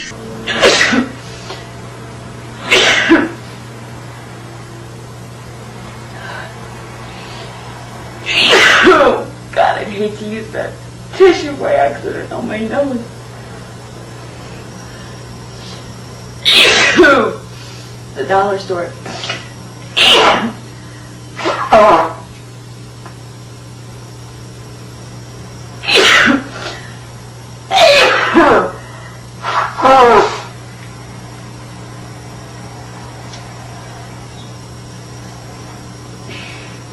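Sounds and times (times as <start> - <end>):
person sneezing: 0.0 - 1.6, 2.6 - 3.4, 8.2 - 9.2, 16.4 - 17.4, 19.0 - 20.6, 21.4 - 22.2, 25.8 - 27.0, 27.7 - 30.6, 36.3 - 36.8.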